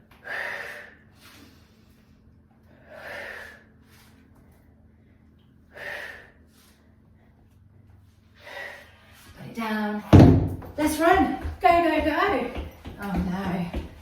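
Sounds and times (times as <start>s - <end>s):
woman's forceful breaths out: 0.2s - 1.7s, 5.7s - 6.7s.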